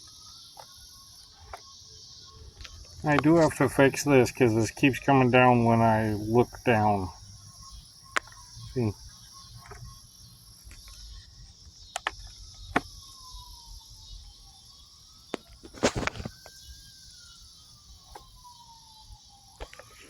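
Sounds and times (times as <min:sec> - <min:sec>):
insects chirping: 0:00.0 - 0:20.0
helmet clicks and knocks: 0:09.6 - 0:09.9, 0:10.6 - 0:13.0.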